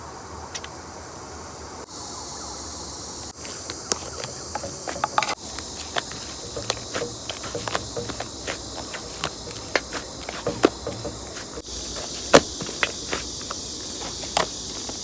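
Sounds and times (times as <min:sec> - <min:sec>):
slime hissing: 0:03.4 - 0:15.0.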